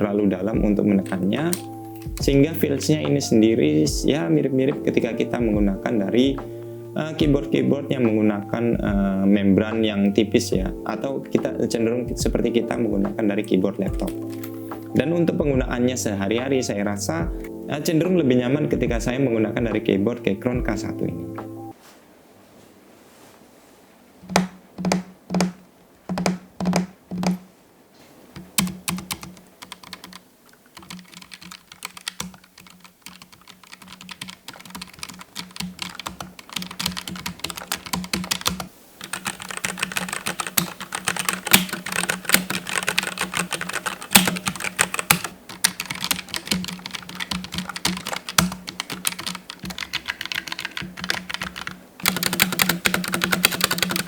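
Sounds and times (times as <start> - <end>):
mechanical keyboard typing: 28.4 - 54.0.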